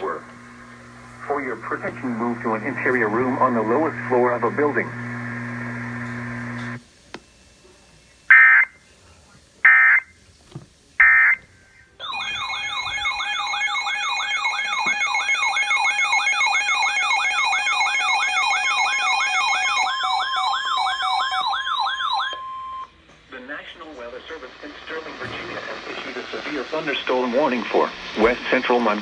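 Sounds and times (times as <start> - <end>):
warbling electronic alert tone: 12.1 - 20.2.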